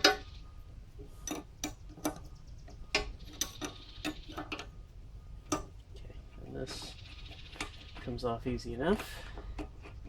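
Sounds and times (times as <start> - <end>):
hand tools clicking on metal: 1.2 - 4.7.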